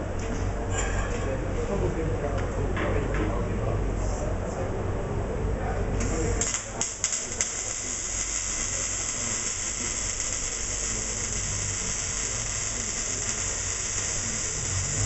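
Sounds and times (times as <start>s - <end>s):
welding arc hissing: 6.1s - 15.0s.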